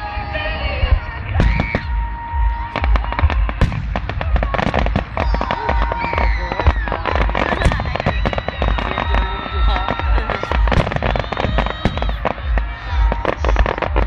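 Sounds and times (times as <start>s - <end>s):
fireworks deep booms: 0.1s - 14.0s
fireworks crackling pops: 1.0s - 14.0s.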